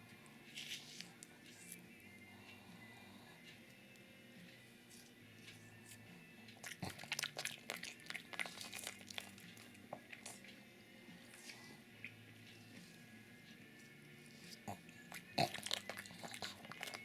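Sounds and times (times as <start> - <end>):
dog chewing: 6.6 - 10.6, 14.3 - 17.0.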